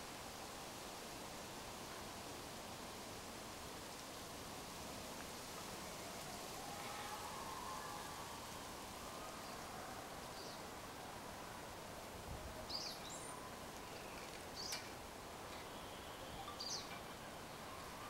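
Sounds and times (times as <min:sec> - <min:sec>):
outdoor background hiss: 0:00.0 - 0:18.0
bird chirping: 0:15.6 - 0:17.9.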